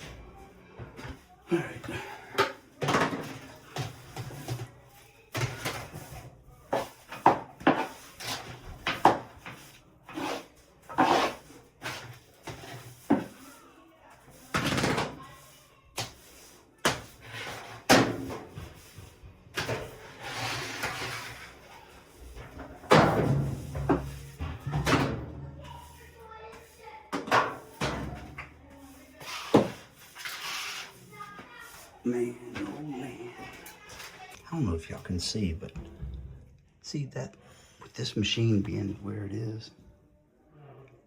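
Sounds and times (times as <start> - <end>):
rustling scrapes: 3.2 - 32.0.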